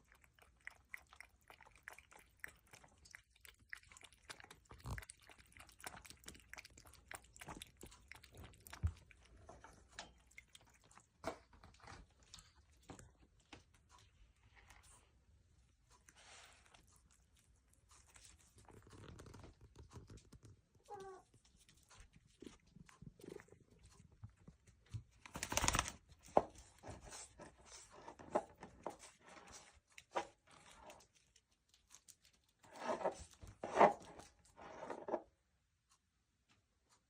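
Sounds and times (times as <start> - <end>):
cat meowing: 20.8 - 21.3.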